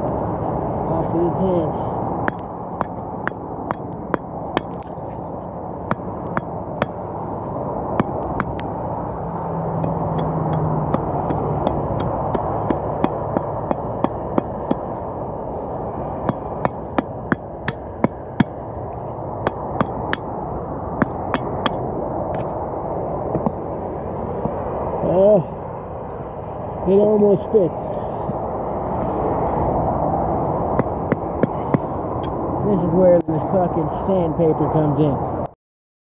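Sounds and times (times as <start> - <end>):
wood being struck: 2.2 - 4.9, 5.8 - 7.0, 7.9 - 8.7, 9.8 - 15.0, 16.2 - 18.6, 19.4 - 20.3, 21.0 - 22.6, 23.3 - 23.6, 30.7 - 32.4.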